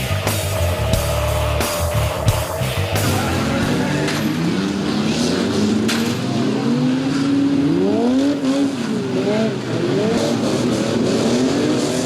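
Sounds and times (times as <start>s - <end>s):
car engines revving: 0.0s - 12.0s.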